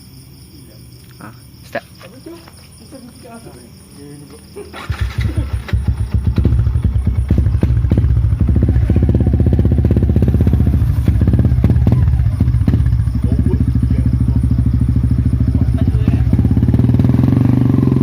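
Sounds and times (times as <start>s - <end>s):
motorcycle engine idling: 4.5s - 18.0s
loud exhaust pulses: 4.8s - 18.0s.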